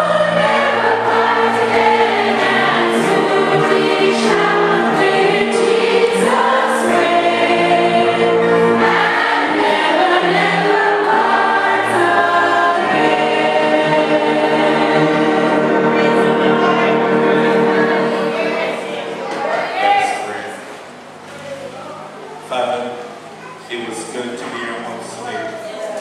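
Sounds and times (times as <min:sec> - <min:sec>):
choir singing: 0:00.0 - 0:20.6.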